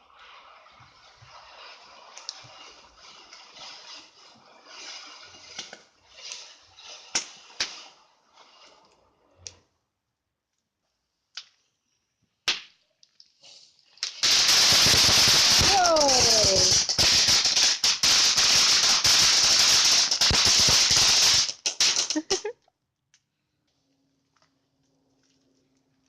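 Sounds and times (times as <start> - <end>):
firework hissing rush: 0.0 - 9.5, 13.4 - 22.5
fireworks crackling and popping: 0.0 - 9.8, 11.1 - 23.3.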